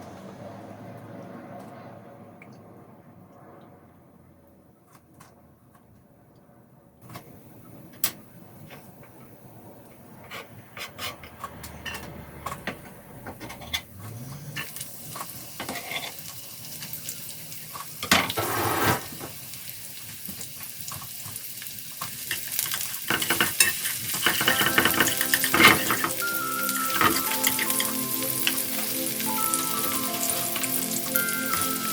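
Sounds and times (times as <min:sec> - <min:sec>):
utensil scraping a pan: 0:10.2 - 0:12.2, 0:18.2 - 0:19.2
food sizzling in a frying pan: 0:14.2 - 0:31.9.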